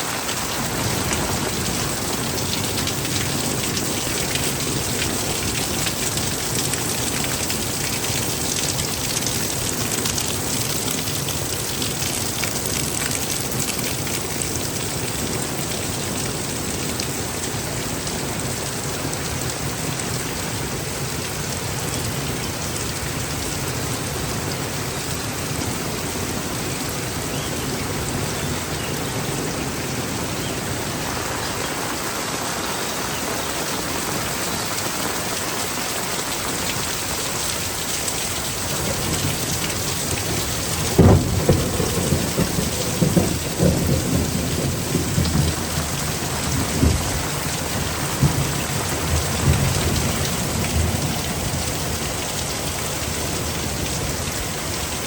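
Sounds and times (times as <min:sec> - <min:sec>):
heavy rain pouring: 0:00.0 - 0:55.0
thunder rumbling: 0:00.3 - 0:13.7, 0:38.6 - 0:52.1.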